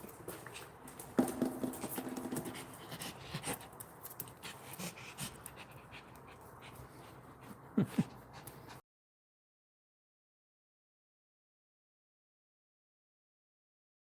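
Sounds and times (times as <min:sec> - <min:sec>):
dog panting: 0:01.6 - 0:08.8.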